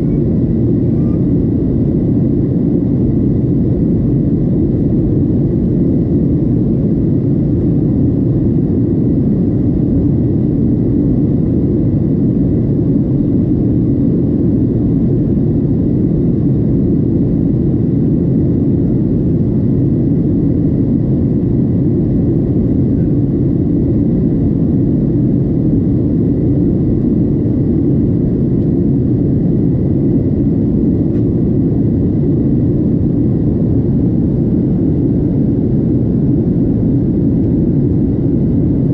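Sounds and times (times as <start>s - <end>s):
faint high whine: 0.0s - 2.4s
airplane cabin engine rush: 0.0s - 38.9s.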